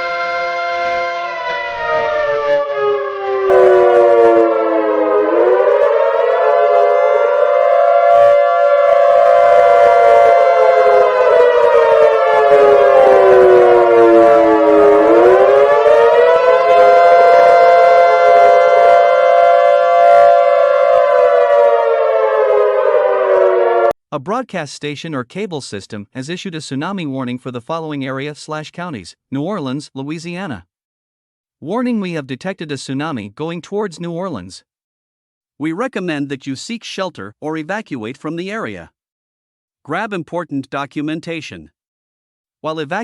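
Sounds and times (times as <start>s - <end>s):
multi-tone warning siren wailing: 0.0s - 24.0s.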